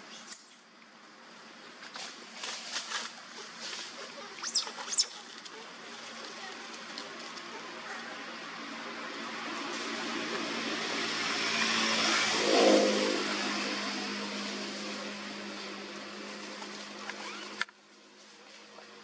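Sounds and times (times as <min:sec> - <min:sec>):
motor vehicle passing: 0:07.2 - 0:17.5.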